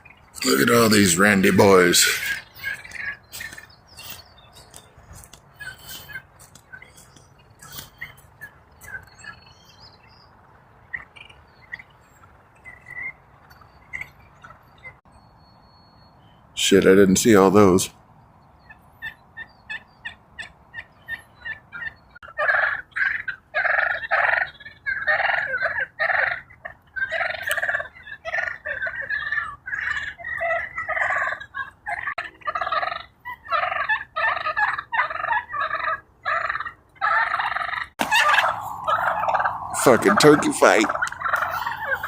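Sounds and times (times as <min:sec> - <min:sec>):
wild turkeys calling: 0:00.0 - 0:15.0, 0:15.6 - 0:42.0
toms gobbling loudly: 0:00.4 - 0:03.6, 0:27.0 - 0:42.0.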